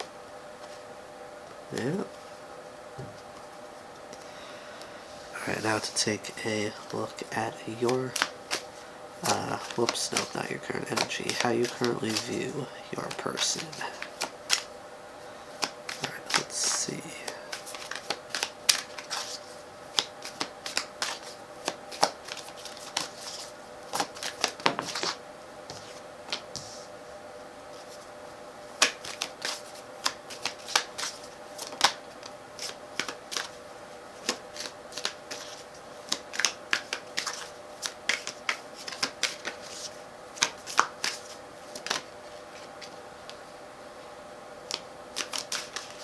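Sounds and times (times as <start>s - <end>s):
faint steady hum: 0.0s - 46.0s
cards being shuffled: 5.4s - 14.7s, 15.5s - 26.9s, 28.8s - 33.6s, 34.2s - 43.4s, 44.7s - 46.0s.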